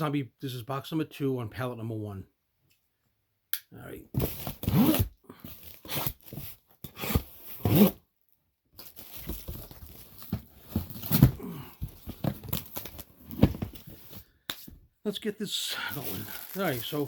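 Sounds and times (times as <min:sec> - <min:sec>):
contents rustling: 0:08.8 - 0:14.4, 0:15.9 - 0:17.0
cardboard box tearing: 0:09.0 - 0:14.1.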